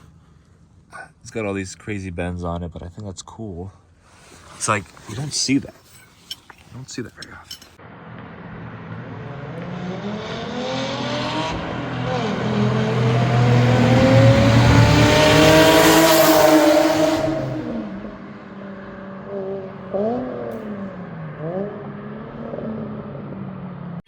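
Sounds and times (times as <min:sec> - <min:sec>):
car engine accelerating: 0:04.3 - 0:24.0
engine throttle blips: 0:11.2 - 0:23.6.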